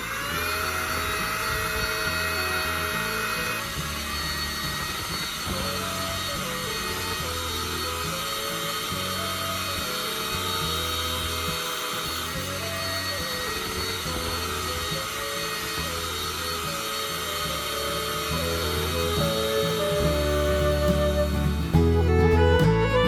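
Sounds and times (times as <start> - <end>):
slow low held music notes: 0.0 - 23.0.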